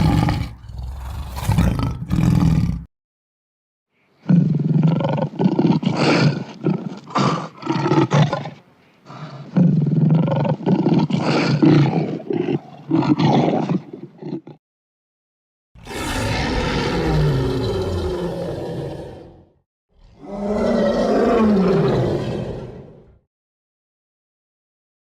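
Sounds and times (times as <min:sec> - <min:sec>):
lion roaring: 0:00.0 - 0:02.9, 0:15.8 - 0:23.2.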